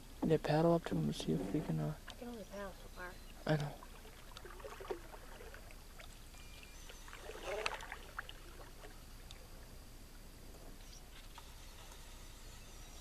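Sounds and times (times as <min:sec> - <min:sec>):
paddle splashing in water: 0:03.8 - 0:06.2, 0:06.9 - 0:09.3.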